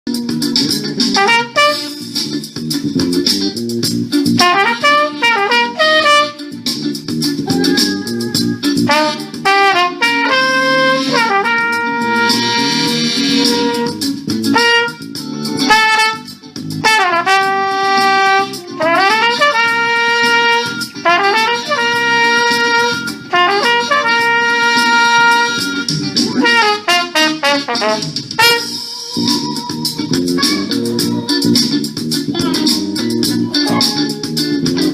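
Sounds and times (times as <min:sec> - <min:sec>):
band backing: 0:00.1 - 0:34.9
trumpet solo: 0:01.2 - 0:02.1, 0:04.4 - 0:06.6, 0:08.7 - 0:28.9.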